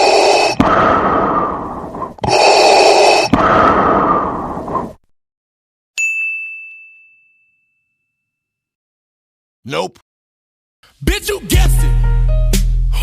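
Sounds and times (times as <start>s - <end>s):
noisy breath-like sound effect: 0.0s - 5.0s
high bell-like ding: 6.0s - 8.6s.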